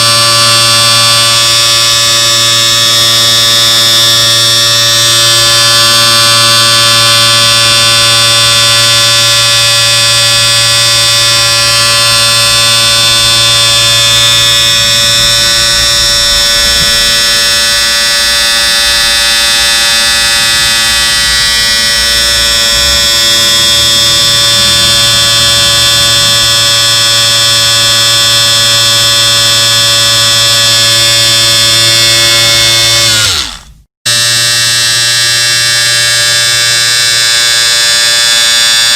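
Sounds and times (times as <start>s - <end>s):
electric shaver buzzing: 0.0s - 38.9s.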